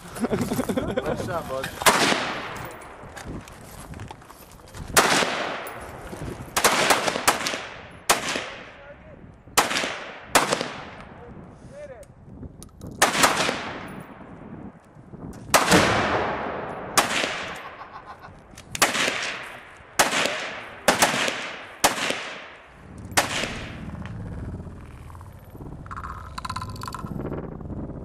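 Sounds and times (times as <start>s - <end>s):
rifle shots with echo: 1.8s - 2.7s, 5.0s - 8.8s, 9.5s - 11.2s, 13.0s - 14.2s, 15.5s - 17.8s, 18.7s - 23.8s.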